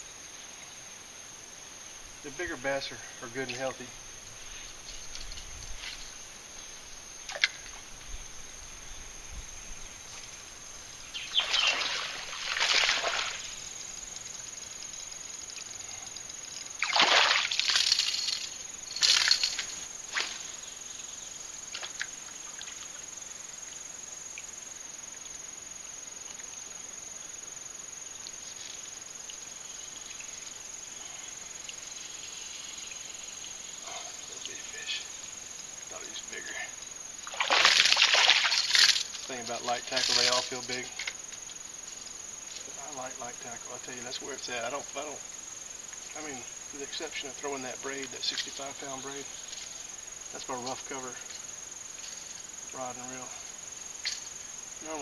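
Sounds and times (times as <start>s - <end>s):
outdoor background hiss: 0.0s - 55.0s
water splashes: 11.2s - 13.9s, 16.8s - 18.3s, 18.9s - 20.6s, 37.2s - 41.1s.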